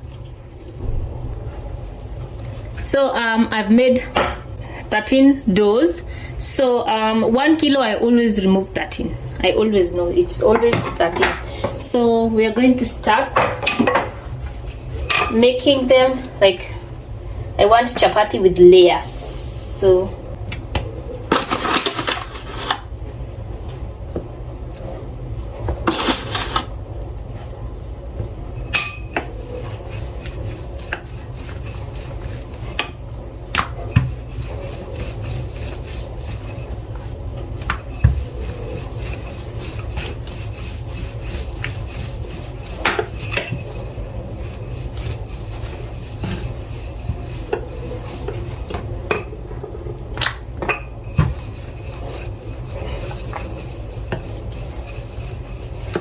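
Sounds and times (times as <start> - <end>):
dishwasher humming: 0.0 - 16.8, 25.2 - 56.0
dough rolled and scraped on board: 23.6 - 56.0.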